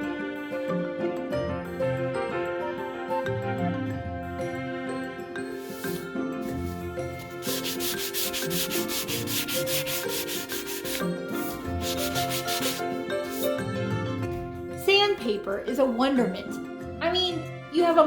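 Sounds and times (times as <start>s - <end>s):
soft background music: 0.0s - 18.0s
sandpaper rubbing on wood: 5.6s - 13.6s.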